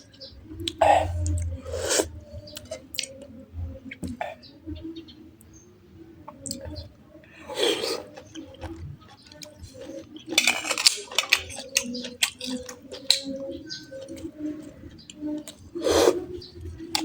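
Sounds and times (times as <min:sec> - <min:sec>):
chewing and mouth clicks: 0:00.2 - 0:03.3, 0:06.3 - 0:06.8, 0:07.5 - 0:17.0.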